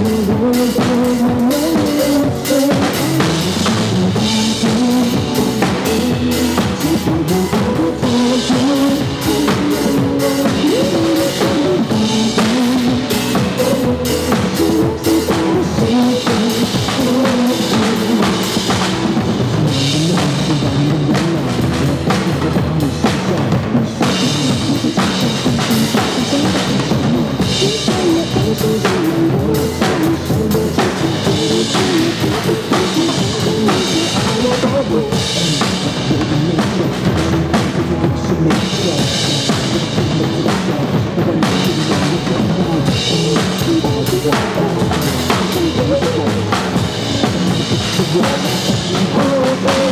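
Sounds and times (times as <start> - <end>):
drum kit playing: 0.0 - 49.9
recorded song: 0.0 - 49.9.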